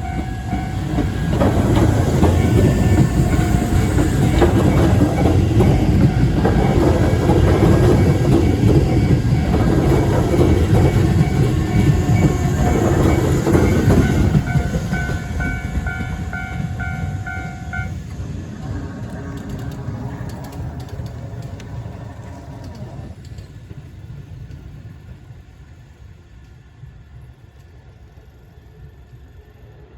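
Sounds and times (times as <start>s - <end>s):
crossing warning bell ringing: 0.0s - 18.3s
electric train passing: 0.0s - 29.9s.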